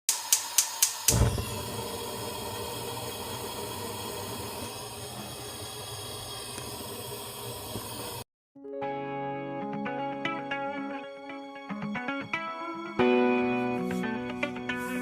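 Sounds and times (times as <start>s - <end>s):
guitar music: 8.7s - 15.0s.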